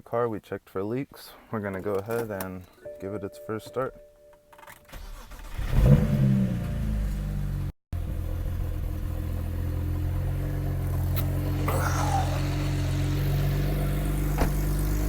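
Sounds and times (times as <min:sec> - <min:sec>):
car engine starting and idling: 0:04.5 - 0:15.0.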